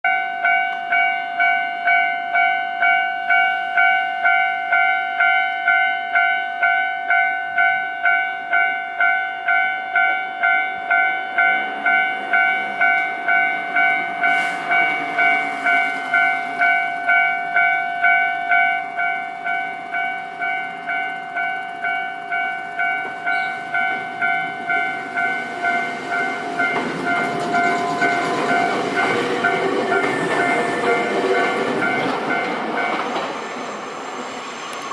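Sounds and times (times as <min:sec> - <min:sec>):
level-crossing warning bell: 0:00.0 - 0:33.9
electric train passing: 0:00.3 - 0:34.9.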